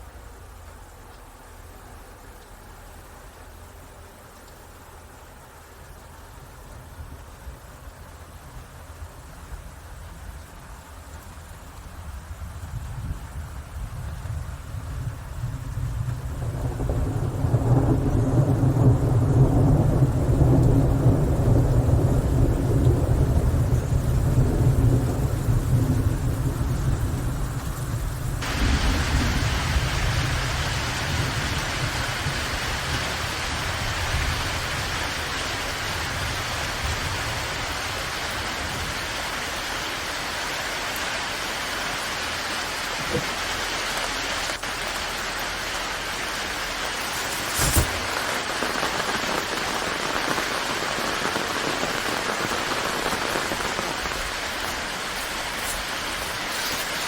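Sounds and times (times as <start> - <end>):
rain hiss: 0.0 - 57.0
thunder rumbling: 12.2 - 39.9, 46.0 - 57.0.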